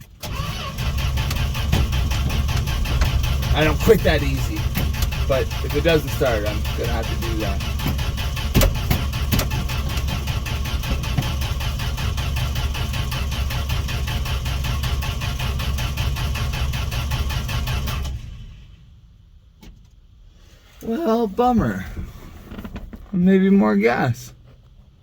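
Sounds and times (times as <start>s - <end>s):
engine cranking by starter: 0.0s - 18.9s.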